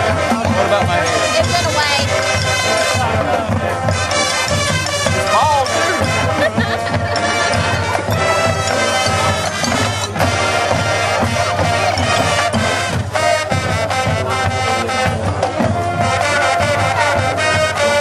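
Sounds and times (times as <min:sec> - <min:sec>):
brass chords: 0:00.0 - 0:18.0
drum strokes: 0:00.0 - 0:18.0.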